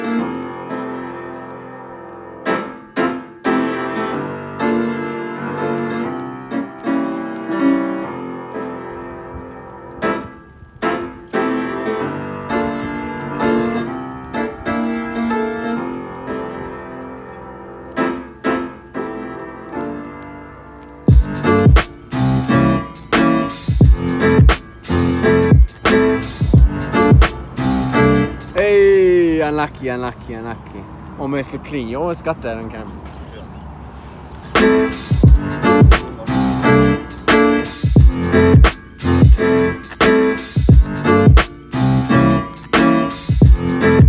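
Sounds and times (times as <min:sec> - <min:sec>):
piano background music: 0:00.0 - 0:29.8, 0:34.4 - 0:44.0
sharp beat hits: 0:21.1 - 0:28.6, 0:34.5 - 0:44.0.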